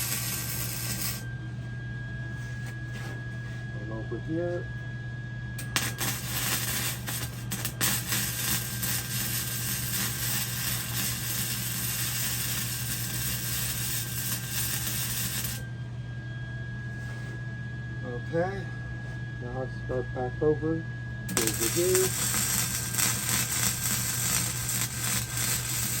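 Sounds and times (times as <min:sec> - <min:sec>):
electric arc welding crackle: 0:00.0 - 0:01.3, 0:05.6 - 0:15.7, 0:21.3 - 0:26.0.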